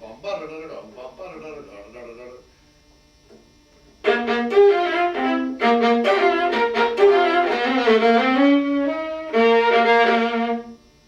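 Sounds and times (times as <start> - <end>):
viola bowed notes: 4.0 - 10.8.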